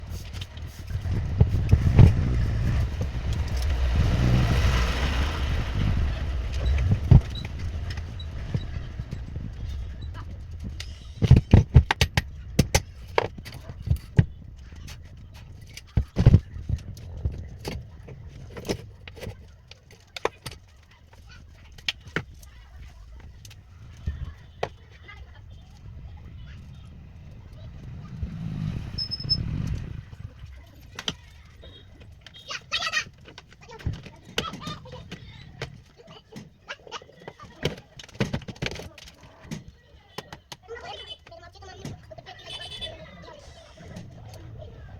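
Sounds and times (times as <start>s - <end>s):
rumbling noise: 0.0s - 19.8s, 21.6s - 31.7s, 42.6s - 44.9s.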